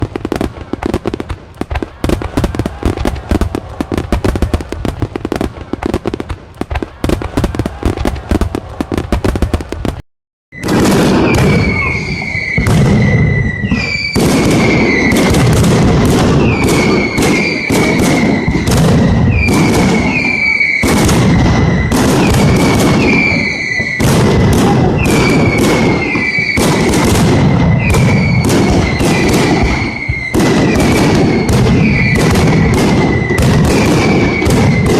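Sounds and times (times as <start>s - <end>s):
firecrackers crackling: 0.0s - 10.0s, 10.6s - 34.9s
loud firework bangs: 0.0s - 34.9s
firework whistles: 10.5s - 34.9s.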